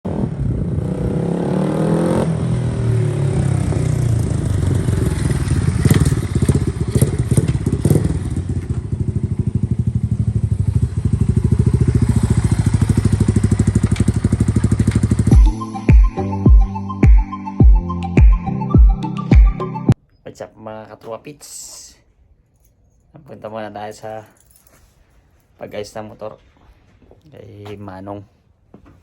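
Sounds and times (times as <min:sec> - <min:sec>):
motorcycle engine idling: 0:03.1 - 0:15.5.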